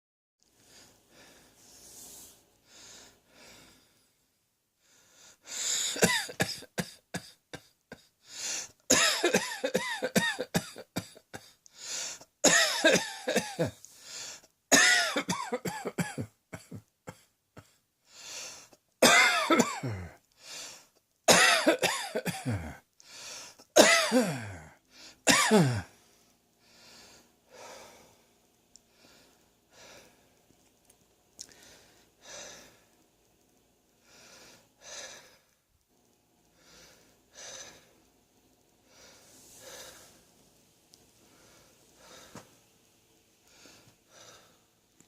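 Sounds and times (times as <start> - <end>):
person coughing: 5.9 - 8.1, 8.9 - 11.6, 12.4 - 13.8, 14.7 - 17.8, 19.0 - 20.2, 21.3 - 22.8, 23.8 - 25.9.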